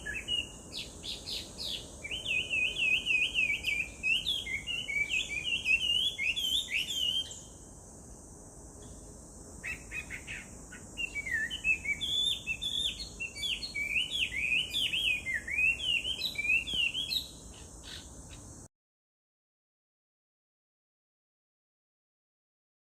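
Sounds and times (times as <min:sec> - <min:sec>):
bird singing whistled phrases: 0:00.0 - 0:07.5, 0:09.6 - 0:17.3
steady high-pitched hiss: 0:00.0 - 0:18.7.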